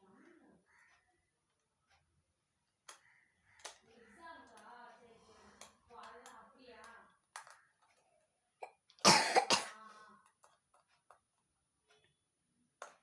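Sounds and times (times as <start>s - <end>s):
faint clicks: 0.8s - 4.8s
person coughing: 8.6s - 9.8s.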